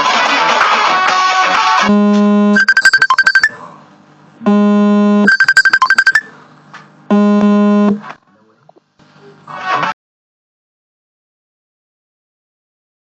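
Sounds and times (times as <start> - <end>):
synthesizer held low note: 1.9 - 3.0, 4.5 - 6.1, 7.1 - 8.0
short high synth beeps: 1.9 - 3.6, 4.5 - 6.3, 7.1 - 8.0.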